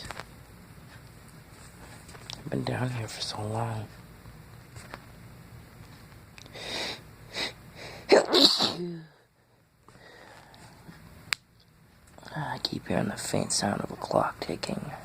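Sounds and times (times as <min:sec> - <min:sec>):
man sneezing: 0:07.4 - 0:09.1.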